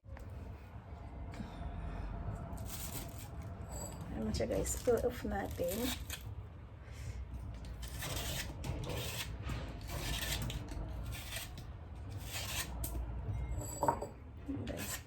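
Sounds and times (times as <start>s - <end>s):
low background hum: 0.0s - 15.0s
pear peel scraping: 2.6s - 4.0s, 4.6s - 6.4s, 7.6s - 13.0s.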